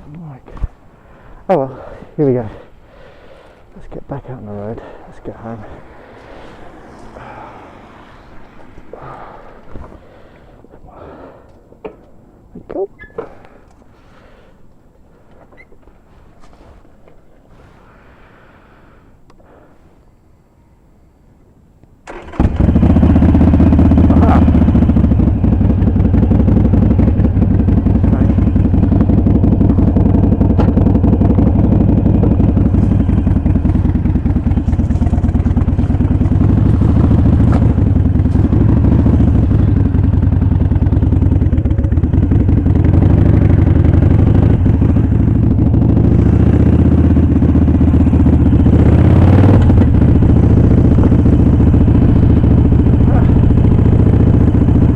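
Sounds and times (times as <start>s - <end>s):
motorcycle engine starting and running: 4.0s - 11.1s, 22.0s - 54.9s.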